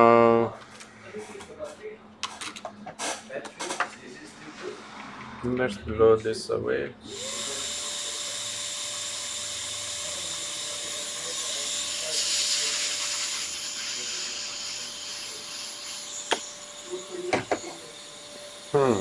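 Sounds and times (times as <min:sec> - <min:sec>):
air blowing hiss: 0:07.0 - 0:19.0.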